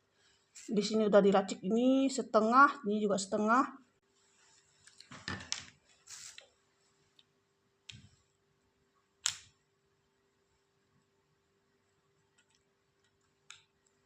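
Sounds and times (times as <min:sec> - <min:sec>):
faint steady hum: 0:00.0 - 0:14.0
plastic parts rustling: 0:04.8 - 0:06.4
sharp plastic clicks: 0:09.2 - 0:09.6.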